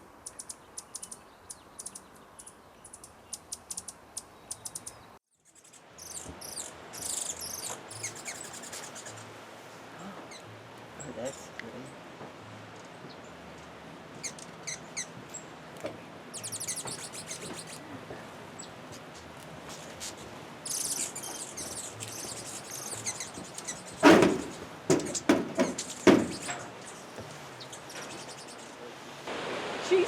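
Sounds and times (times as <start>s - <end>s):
hummingbirds chittering: 0.0s - 29.2s
loud sharp knocks: 24.0s - 26.7s.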